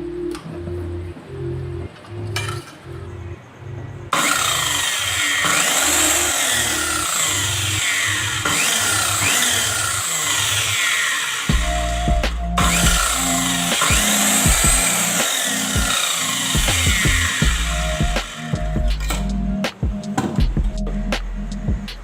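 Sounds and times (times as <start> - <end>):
circular saw cutting wood: 4.1 - 19.3.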